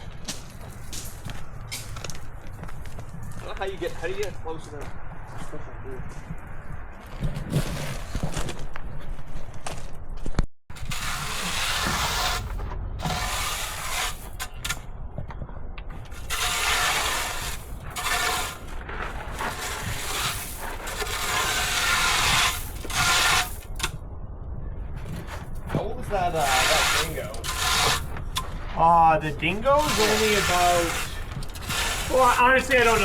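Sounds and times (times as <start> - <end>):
steady low rumble: 0.0 - 33.0
rough scraping strokes: 10.7 - 14.9, 16.1 - 24.0, 25.0 - 33.0.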